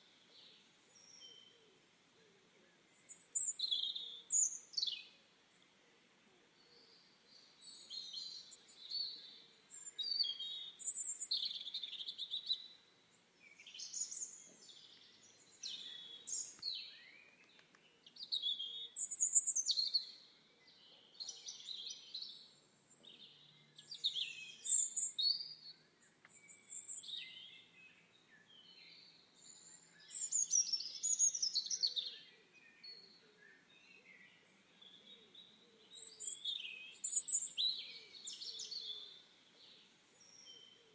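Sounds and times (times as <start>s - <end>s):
songbirds chirping and trilling: 0.0s - 40.9s.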